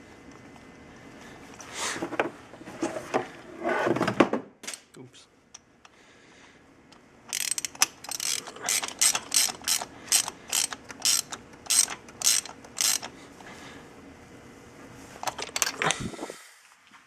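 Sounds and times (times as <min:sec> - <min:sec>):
ratchet wrench clicking: 0:07.3 - 0:13.1.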